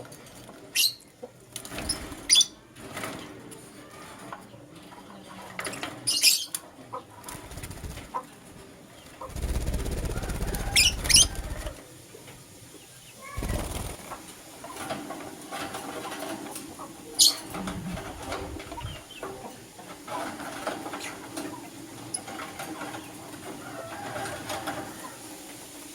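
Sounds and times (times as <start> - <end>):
lovebirds chirping: 9.0 - 11.8
low rustling noise: 13.4 - 21.0.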